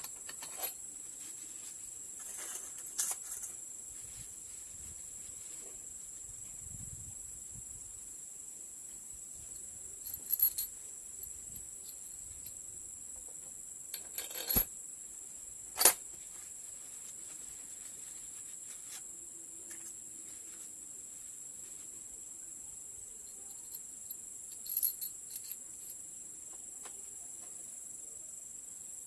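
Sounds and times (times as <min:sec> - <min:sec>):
metal parts clinking: 0:00.0 - 0:00.8, 0:02.2 - 0:03.6, 0:13.9 - 0:14.7, 0:15.8 - 0:16.0, 0:24.5 - 0:26.0
insect chirring: 0:00.0 - 0:29.0.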